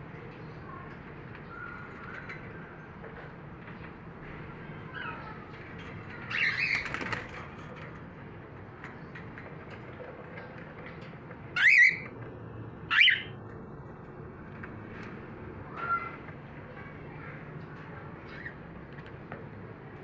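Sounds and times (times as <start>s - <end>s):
wing flutter: 5.9s - 8.0s
cockatiels chattering: 6.2s - 7.3s, 11.6s - 12.0s.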